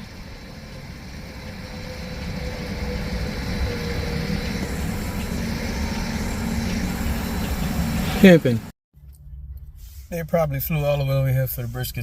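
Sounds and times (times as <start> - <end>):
helicopter engine rumble: 0.0 - 8.7.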